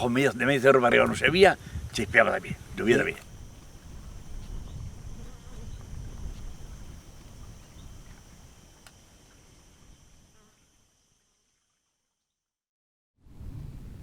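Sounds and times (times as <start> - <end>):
wind rumble on microphone: 0.0 - 8.7, 13.2 - 14.0.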